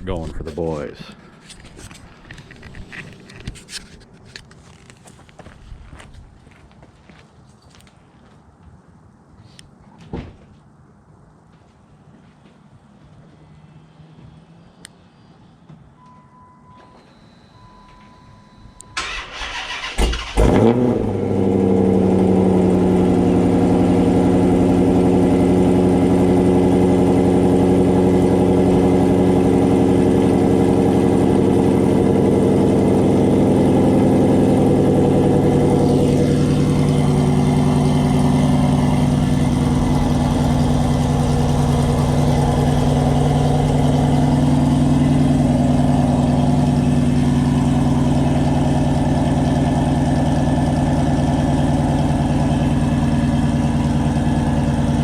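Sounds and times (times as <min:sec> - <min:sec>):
car engine cranking: 0:18.8 - 0:55.0
car engine fast idle: 0:19.0 - 0:55.0.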